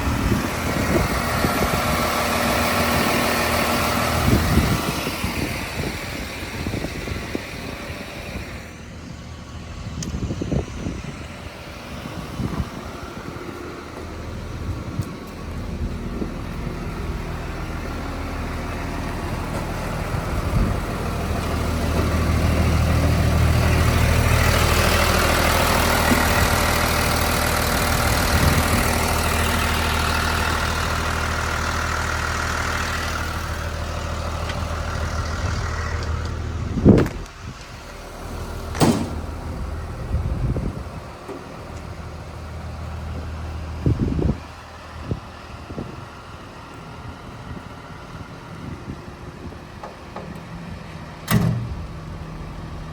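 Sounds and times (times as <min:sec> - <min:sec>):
diesel engine running: 0:00.0 - 0:52.9
sharp clunks: 0:38.7 - 0:39.4, 0:51.2 - 0:51.9.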